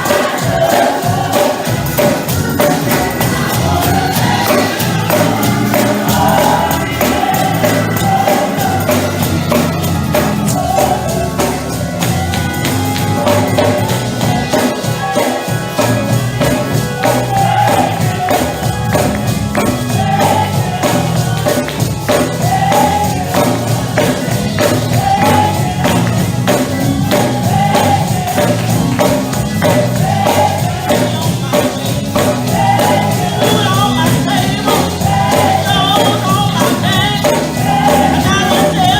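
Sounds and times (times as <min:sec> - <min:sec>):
band playing: 0:00.0 - 0:38.9
congregation and choir singing: 0:00.0 - 0:38.9
tambourine beat: 0:00.0 - 0:38.9.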